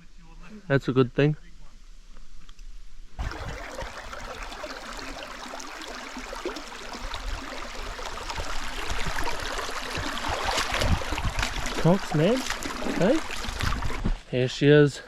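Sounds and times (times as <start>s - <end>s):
creek water running: 3.2s - 14.2s.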